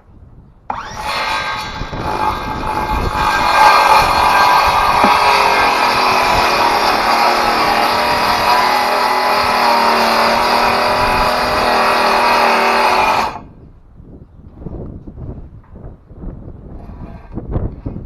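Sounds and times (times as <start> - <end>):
circular saw cutting wood: 0.7 - 13.5.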